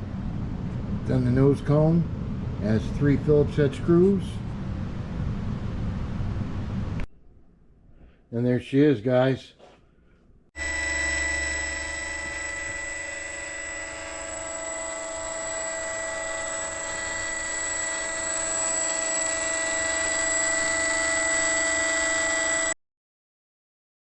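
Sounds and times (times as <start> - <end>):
electric motor spinning propeller: 10.6 - 22.8.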